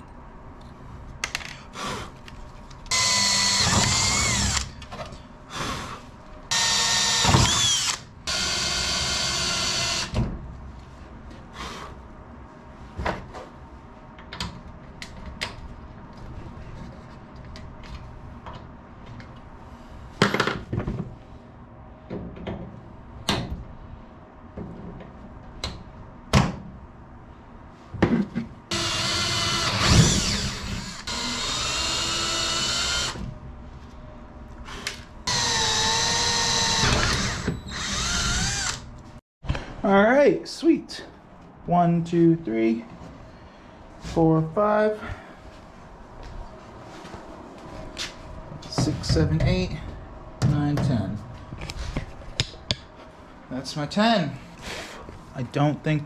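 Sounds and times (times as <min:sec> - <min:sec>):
power drill whining: 0:02.9 - 0:04.7, 0:06.5 - 0:10.1, 0:28.7 - 0:33.2, 0:35.3 - 0:38.9.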